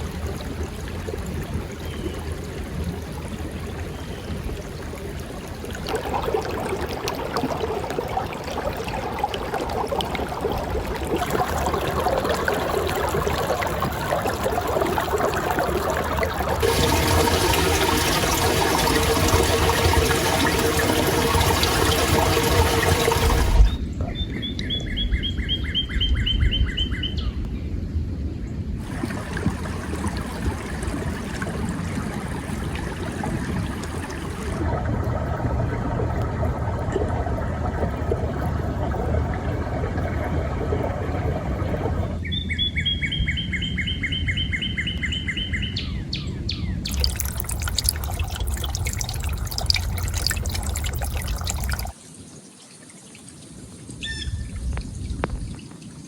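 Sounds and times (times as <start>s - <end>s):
running water rushing: 0.0s - 23.9s, 28.8s - 42.2s, 46.9s - 52.0s
bird singing a whistled trill: 42.2s - 46.8s.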